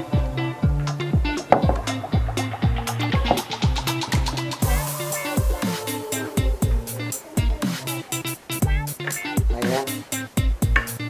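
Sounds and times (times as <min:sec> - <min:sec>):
electronic beat music: 0:00.0 - 0:11.0.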